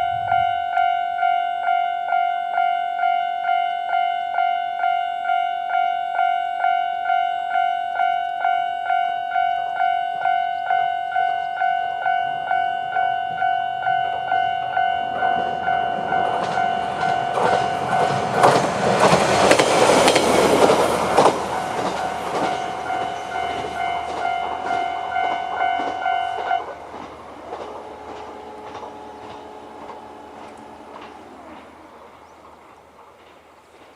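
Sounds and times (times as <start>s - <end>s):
level-crossing warning bell: 0.0s - 32.4s
train wheels clacking on rail joints: 13.2s - 33.9s.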